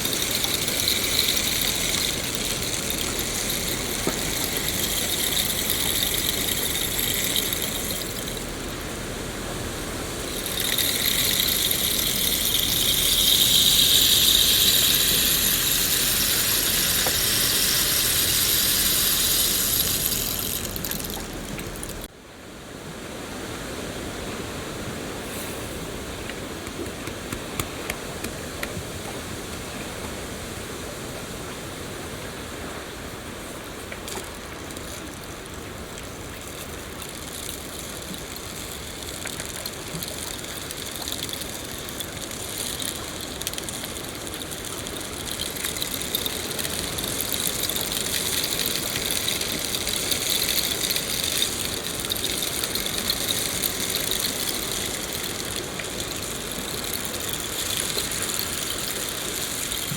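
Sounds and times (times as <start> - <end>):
sharp drip ticks: 0.0 - 9.0, 10.2 - 22.1, 33.9 - 59.9.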